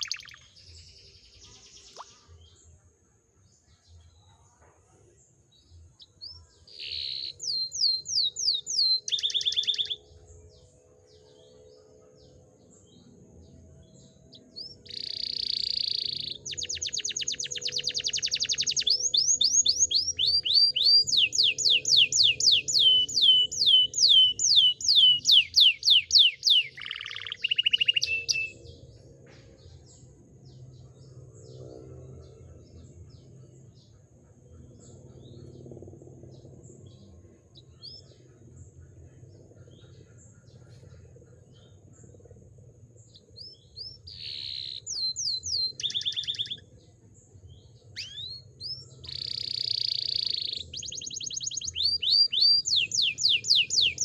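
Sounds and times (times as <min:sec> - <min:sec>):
canary singing: 0:00.0 - 0:00.6, 0:06.7 - 0:10.1, 0:14.3 - 0:28.6, 0:43.4 - 0:46.7, 0:48.0 - 0:54.0
faint bird chirps: 0:00.0 - 0:42.4, 0:43.0 - 0:46.8, 0:47.5 - 0:54.0.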